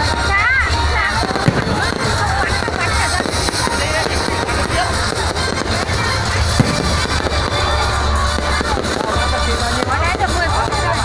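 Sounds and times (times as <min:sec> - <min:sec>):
fireworks crackling and bursting: 0:00.0 - 0:11.0
loud music with heavy bass: 0:00.0 - 0:11.0
sharp firework bang: 0:01.2 - 0:07.8.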